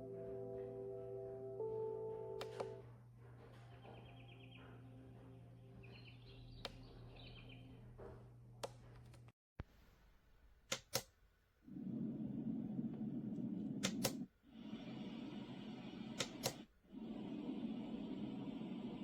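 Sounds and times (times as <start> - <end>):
button clicks: 2.4 - 2.8.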